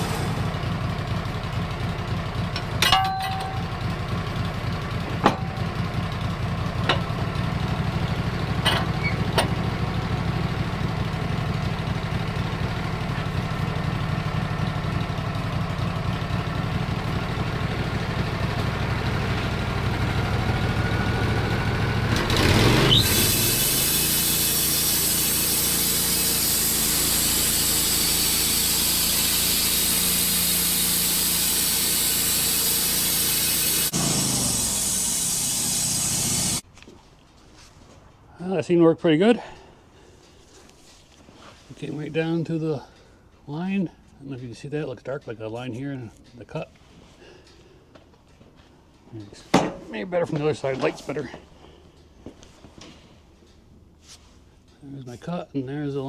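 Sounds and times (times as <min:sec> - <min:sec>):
band saw blade hissing through wood: 0:00.0 - 0:00.9, 0:22.4 - 0:36.6
sawmill engine idling and revving: 0:00.0 - 0:36.7.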